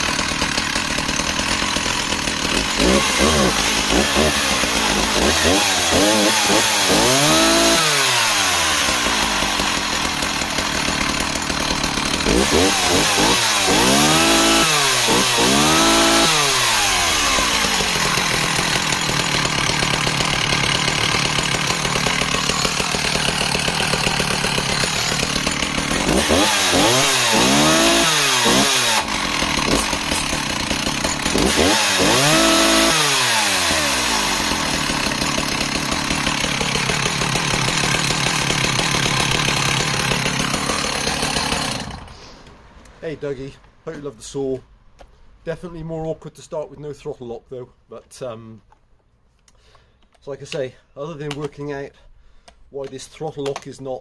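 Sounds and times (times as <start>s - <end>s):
chainsaw revving: 0.0s - 42.4s.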